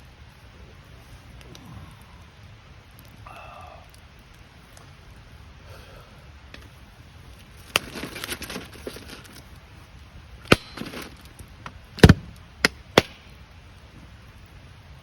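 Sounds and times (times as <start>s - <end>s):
handling clatter: 7.6s - 9.5s, 10.5s - 11.3s.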